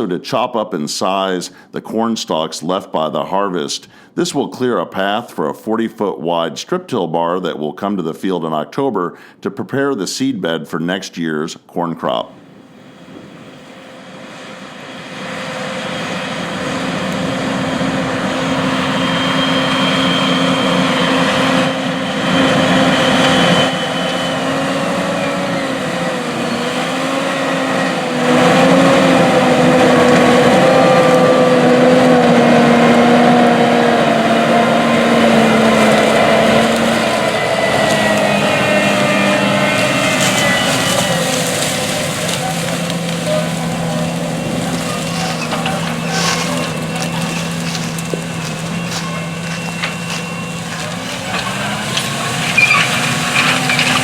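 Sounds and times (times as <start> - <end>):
tractor diesel engine under load: 12.2 - 54.0.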